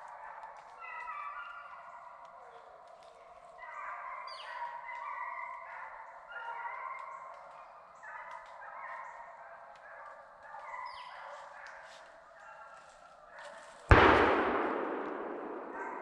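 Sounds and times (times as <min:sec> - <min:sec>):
hounds baying in chorus: 0:00.0 - 0:13.8.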